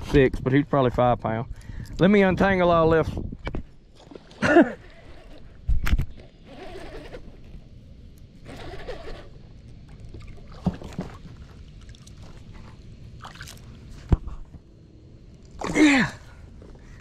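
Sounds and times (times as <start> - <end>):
water sloshing around kayak: 3.6 - 7.6, 8.5 - 14.4.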